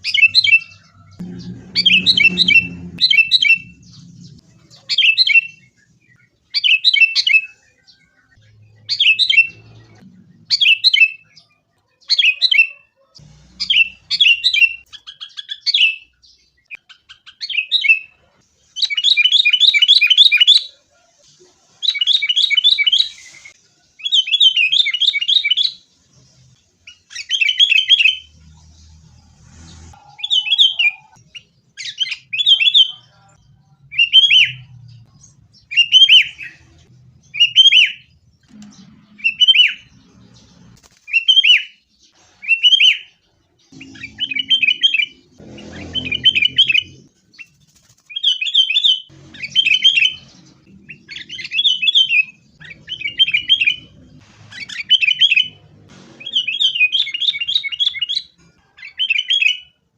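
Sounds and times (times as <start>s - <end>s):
bird calling: 0.0s - 11.4s, 30.0s - 33.1s, 43.7s - 47.1s, 48.2s - 55.6s.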